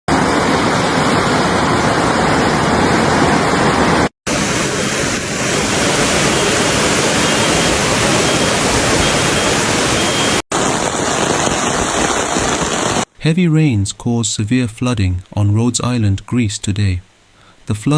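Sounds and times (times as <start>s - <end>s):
roar of rushing floodwater: 0.1s - 13.1s.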